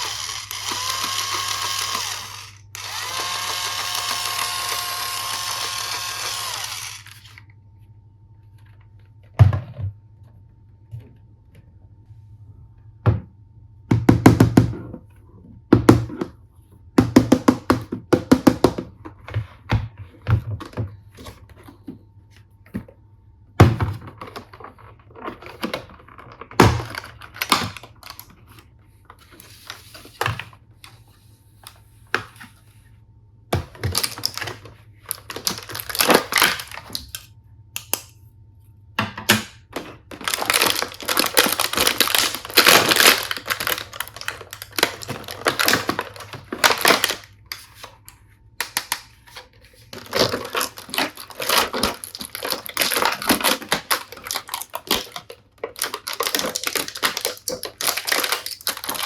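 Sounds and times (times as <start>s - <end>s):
packaging rustling: 33.9s - 37.2s, 40.1s - 48.0s, 48.7s - 59.0s
plastic pieces clicking and knocking: 50.0s - 59.0s.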